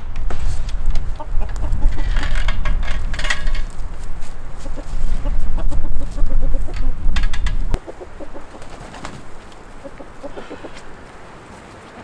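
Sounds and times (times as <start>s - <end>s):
loud low rumble: 0.0s - 7.8s
chickens clucking: 0.0s - 12.0s.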